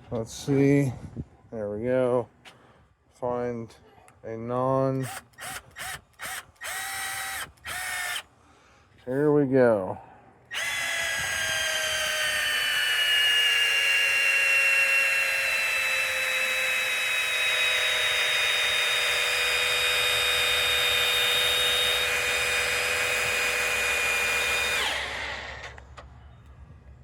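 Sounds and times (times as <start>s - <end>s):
cordless screwdriver motor whine: 5.0s - 8.3s, 10.5s - 26.0s.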